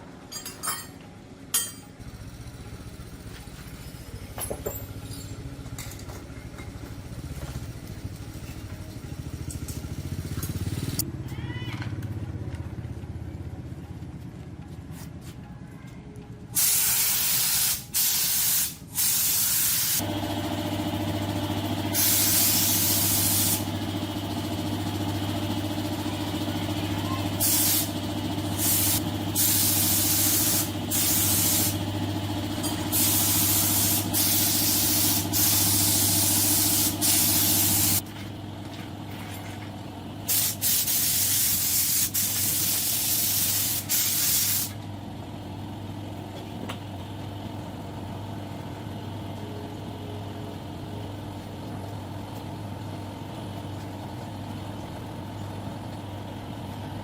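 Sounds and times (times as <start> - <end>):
compressed air hissing: 16.6 - 20.0, 21.9 - 23.7, 27.4 - 27.9, 28.5 - 31.8, 32.9 - 38.0, 40.3 - 44.8
steady machine hum: 20.0 - 40.6.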